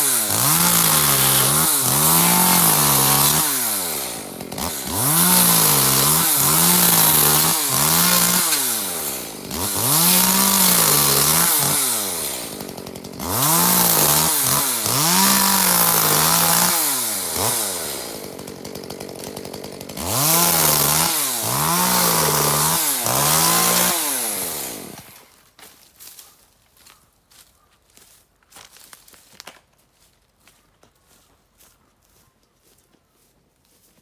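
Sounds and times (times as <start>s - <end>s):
chainsaw cutting bamboo: 0.0s - 25.6s.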